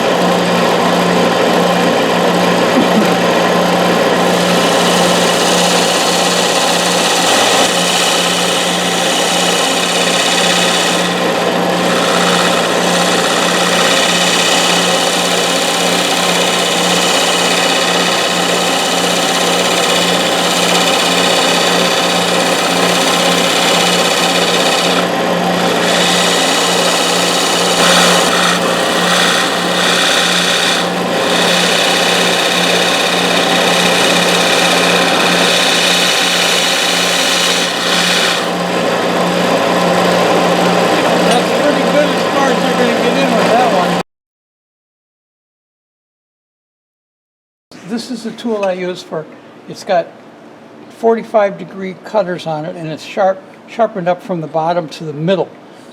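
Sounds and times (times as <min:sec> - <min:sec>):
tool scraping spinning wood: 0:00.0 - 0:44.0
wood lathe motor hum: 0:00.0 - 0:44.0.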